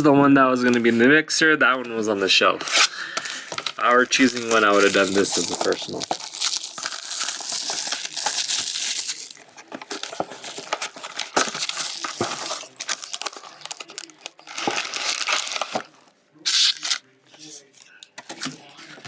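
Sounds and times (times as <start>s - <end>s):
plastic wrapping crinkling and tearing: 2.7s - 17.5s.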